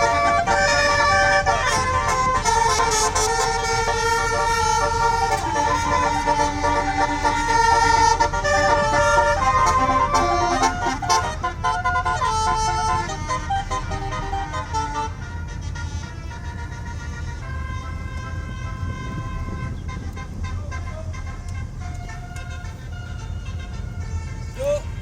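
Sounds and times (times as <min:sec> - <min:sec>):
musical bus horn playing a tune: 0:00.0 - 0:25.0.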